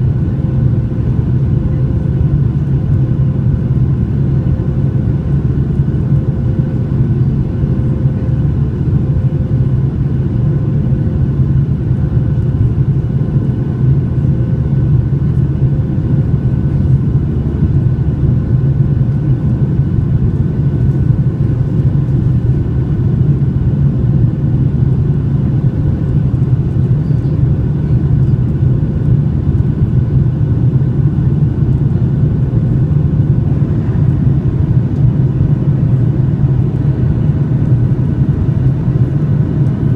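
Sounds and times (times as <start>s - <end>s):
airplane cabin engine rumble: 0.0s - 39.9s.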